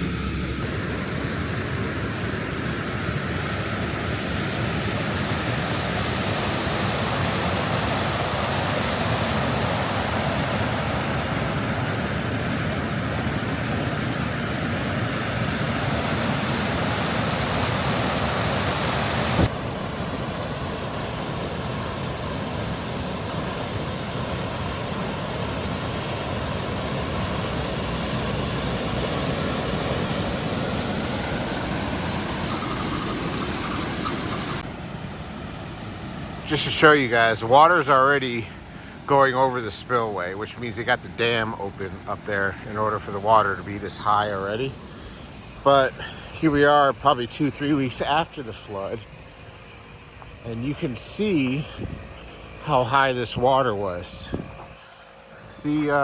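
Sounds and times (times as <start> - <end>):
water rushing over a spillway: 0.6 - 34.6.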